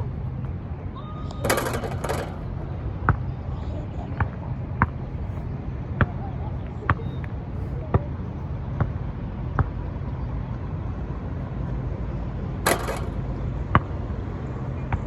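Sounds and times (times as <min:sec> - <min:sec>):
basketball bouncing on pavement: 0:01.4 - 0:03.3, 0:04.2 - 0:05.0, 0:08.8 - 0:09.9, 0:12.7 - 0:14.1
harsh rattle: 0:12.7 - 0:13.3.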